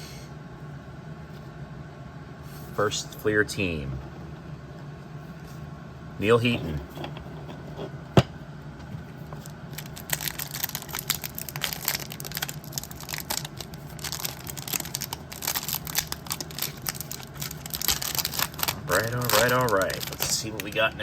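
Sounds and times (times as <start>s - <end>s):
wrapper crinkling and tearing: 9.4s - 21.0s.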